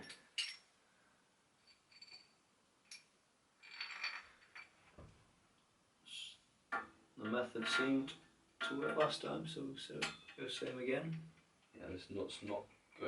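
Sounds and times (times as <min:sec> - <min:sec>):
faint metal clinks: 0:00.0 - 0:00.7, 0:01.6 - 0:04.8
metal ringing: 0:06.8 - 0:09.4.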